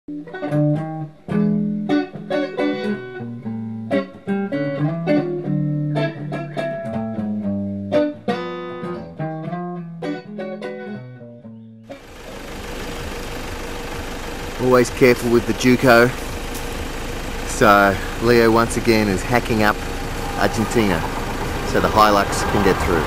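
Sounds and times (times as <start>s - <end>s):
plucked guitar notes: 0.1s - 22.8s
held low bass notes: 11.6s - 23.0s.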